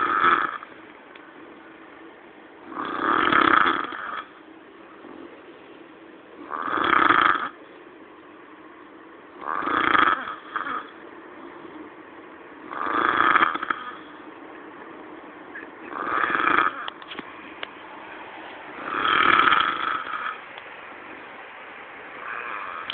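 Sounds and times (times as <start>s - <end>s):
man snoring heavily: 0.0s - 0.7s, 2.7s - 4.4s, 6.4s - 7.6s, 9.4s - 11.0s, 12.7s - 14.2s, 15.9s - 16.9s, 18.8s - 20.4s, 22.2s - 22.9s.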